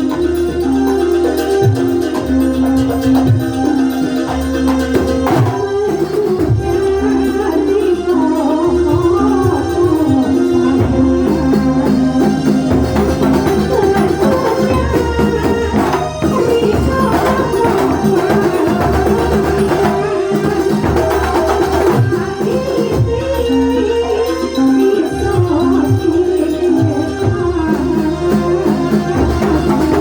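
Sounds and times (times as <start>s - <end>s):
hand-beaten drums: 0.0s - 30.0s
melodic instruments: 0.0s - 30.0s.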